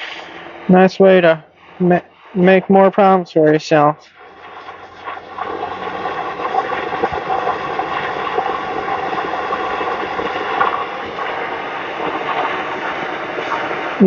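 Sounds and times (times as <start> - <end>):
propane torch hissing: 0.0 - 1.0, 4.0 - 14.0.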